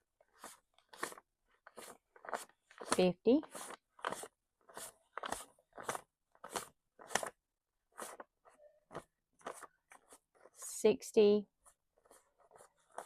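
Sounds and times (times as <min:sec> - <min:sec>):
paper bills flicking: 0:00.4 - 0:08.2.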